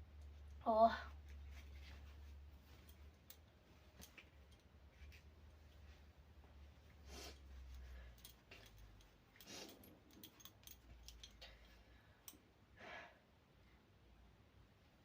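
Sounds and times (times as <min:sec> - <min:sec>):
woman breathing: 0:06.9 - 0:10.1, 0:11.2 - 0:13.4.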